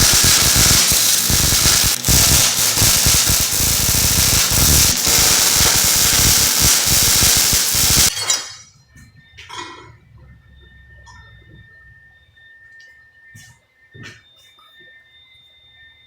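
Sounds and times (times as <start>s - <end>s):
welder crackling: 0.0s - 8.6s.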